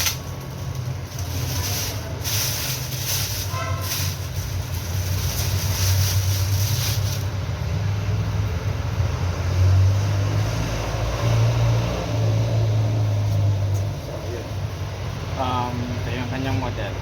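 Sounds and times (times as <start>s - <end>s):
hiss: 1.1s - 7.3s.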